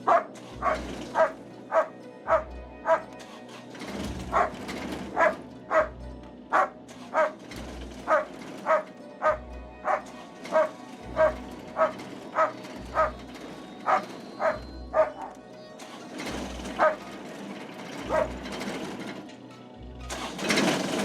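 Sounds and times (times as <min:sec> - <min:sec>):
dog barking: 0:00.0 - 0:03.1, 0:04.3 - 0:07.4, 0:08.1 - 0:13.2, 0:13.9 - 0:15.4, 0:16.8 - 0:17.0, 0:18.1 - 0:18.4.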